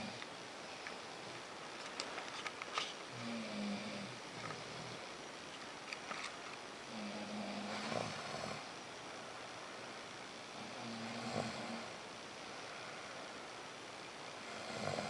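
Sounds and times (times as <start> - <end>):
faint steady hiss: 0.0 - 15.0
person snoring: 3.1 - 5.0, 6.9 - 8.7, 10.6 - 12.0, 14.4 - 15.0.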